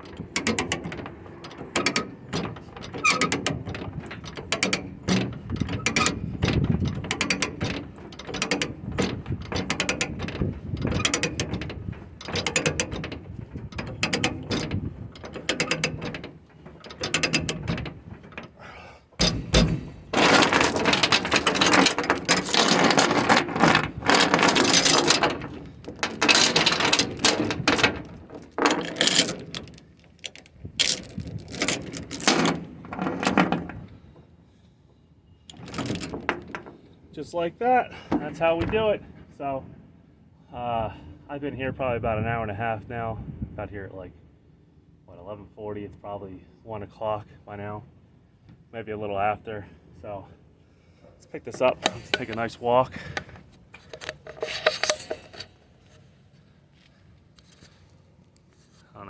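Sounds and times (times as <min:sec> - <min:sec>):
rattling noise: 0:00.0 - 0:18.6, 0:19.2 - 0:34.0, 0:35.5 - 0:36.8.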